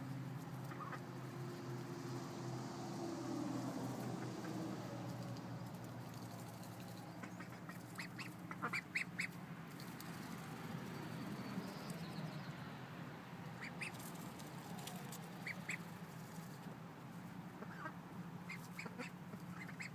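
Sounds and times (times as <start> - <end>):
ducklings peeping: 6.3 - 10.2, 13.5 - 16.1, 17.6 - 19.9.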